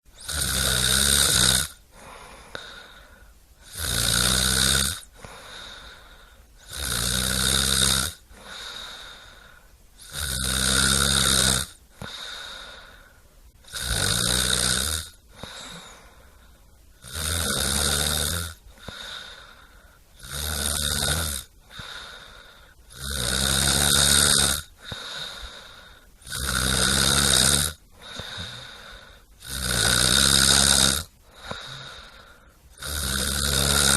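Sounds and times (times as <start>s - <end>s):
person snoring: 0.2s - 33.9s
quiet breaths out: 1.9s - 3.4s, 5.1s - 6.6s, 15.3s - 16.9s, 18.6s - 20.2s, 21.6s - 22.9s, 24.8s - 26.2s, 27.9s - 29.4s, 31.2s - 32.7s.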